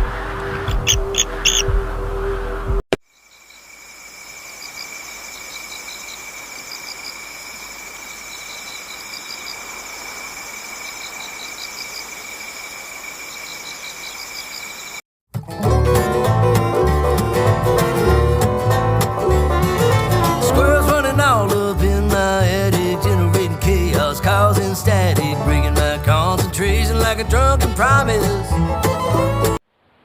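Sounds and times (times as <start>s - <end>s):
music with high calls: 0.6s - 2.2s
insect trill: 0.7s - 1.6s, 3.1s - 15.0s
insects chirping in short pulses: 0.7s - 1.6s, 3.0s - 15.0s.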